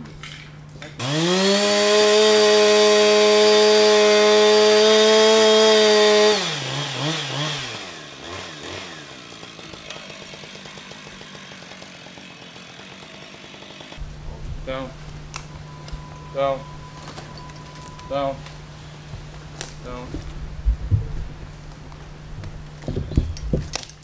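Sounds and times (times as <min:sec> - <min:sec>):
chainsaw revving and idling: 0:01.0 - 0:16.7.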